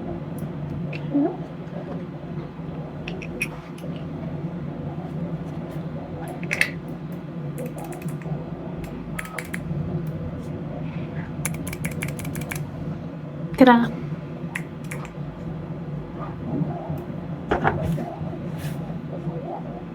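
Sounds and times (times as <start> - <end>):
steady low hum: 0.0 - 19.9
plastic parts clicking: 11.5 - 12.6.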